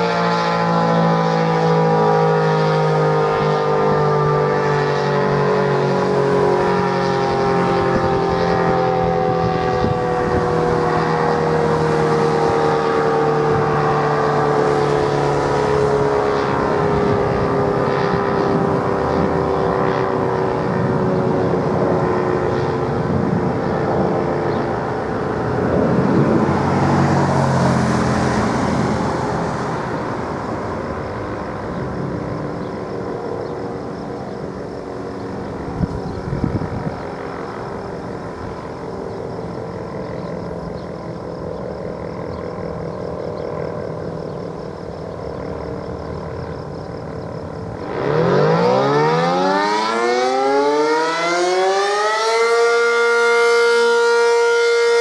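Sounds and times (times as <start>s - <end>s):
road traffic noise: 0.0s - 55.0s
warning siren winding down: 0.0s - 55.0s.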